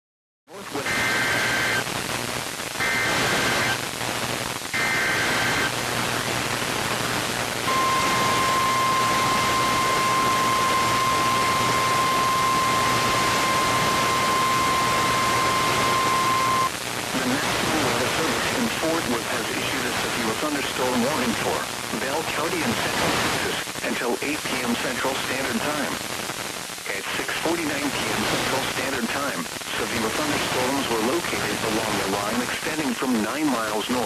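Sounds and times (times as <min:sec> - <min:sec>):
radio hiss: 0:00.5 - 0:34.0
steady warning alarm tone: 0:07.7 - 0:16.7
warbling digital data tones: 0:07.7 - 0:16.7.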